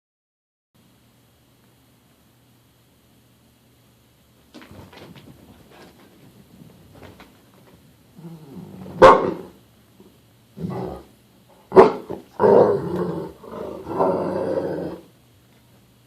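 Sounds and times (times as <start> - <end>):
dogs growling: 8.2 - 9.6, 10.6 - 15.1
dogs barking: 8.9 - 9.6, 11.7 - 12.8.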